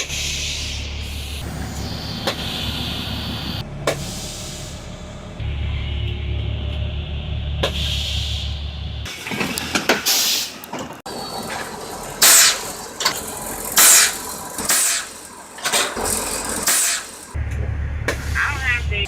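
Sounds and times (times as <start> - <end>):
air brake hisses: 0.0 - 5.0, 7.6 - 8.6, 9.4 - 10.6, 13.8 - 15.2, 16.4 - 17.2
diesel engine idling: 0.0 - 19.0.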